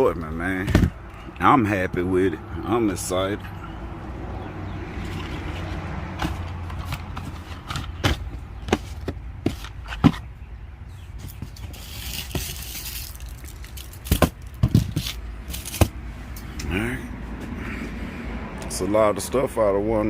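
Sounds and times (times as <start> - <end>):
cardboard boxes knocking and scraping: 0.6 - 1.0, 5.6 - 10.3, 14.0 - 16.0.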